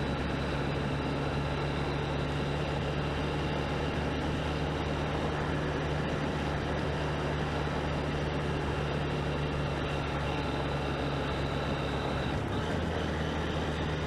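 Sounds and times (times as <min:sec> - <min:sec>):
motorcycle engine running: 0:00.0 - 0:14.0
wind and road noise: 0:00.0 - 0:14.0.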